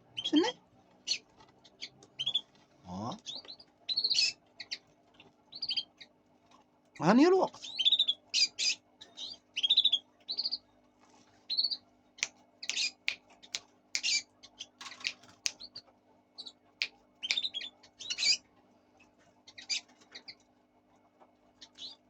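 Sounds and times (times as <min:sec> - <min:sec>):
lovebirds chirping: 0:00.0 - 0:04.8, 0:05.5 - 0:06.2, 0:07.0 - 0:10.7, 0:11.4 - 0:15.8, 0:16.4 - 0:18.4, 0:19.4 - 0:20.4, 0:21.6 - 0:22.0
sharp clicks: 0:14.8 - 0:15.7, 0:16.8 - 0:17.5.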